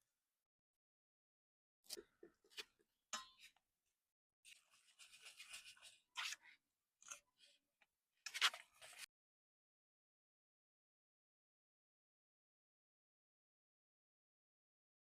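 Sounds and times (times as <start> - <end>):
scratching and crunching noises: 4.5 - 7.5, 8.3 - 9.1.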